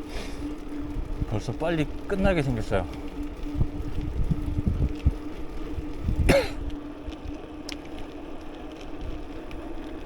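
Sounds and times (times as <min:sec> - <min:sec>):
steady hum: 0:00.0 - 0:10.0
wind buffeting microphone: 0:00.4 - 0:10.0
person coughing: 0:06.3 - 0:06.6.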